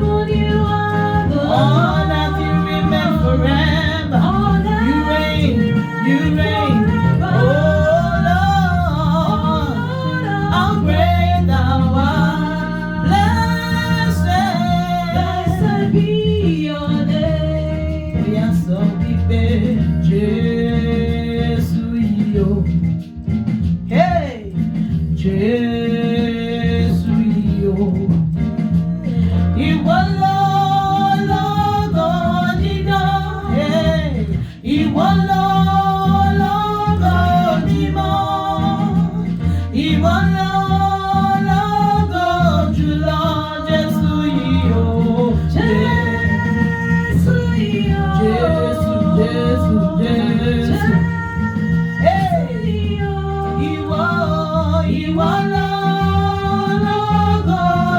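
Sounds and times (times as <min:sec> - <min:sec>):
person singing worship song: 0:00.0 - 0:17.3, 0:29.0 - 0:57.9
instrumental accompaniment with bass: 0:00.0 - 0:57.9.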